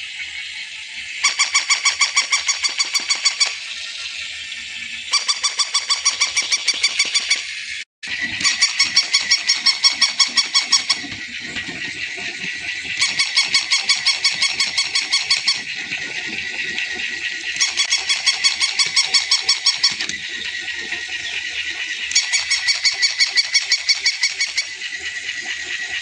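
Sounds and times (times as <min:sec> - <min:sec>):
toy motor whine and rattle: 0:00.0 - 0:26.0
electronic toy rapid beeps: 0:01.2 - 0:03.6, 0:05.1 - 0:07.5, 0:08.4 - 0:11.1, 0:13.0 - 0:15.7, 0:17.6 - 0:20.2, 0:22.1 - 0:24.9.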